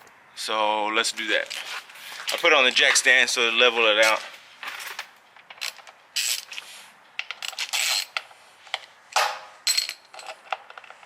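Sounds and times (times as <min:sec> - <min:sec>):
hand tools clinking on metal bolts: 0:09.2 - 0:11.0.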